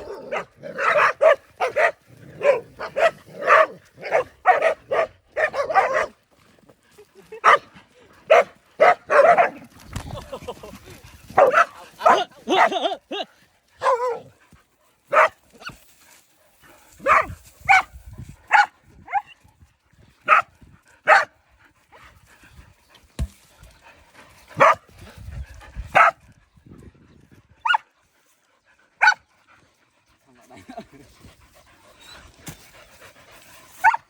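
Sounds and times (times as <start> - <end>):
dogs barking: 0.0 - 6.2, 7.4 - 7.7, 8.3 - 9.6, 11.4 - 12.9, 13.8 - 14.3, 15.1 - 15.4, 17.0 - 17.9, 18.5 - 19.3, 20.2 - 21.4, 24.6 - 24.8, 25.9 - 26.2, 29.0 - 29.2, 33.8 - 34.0.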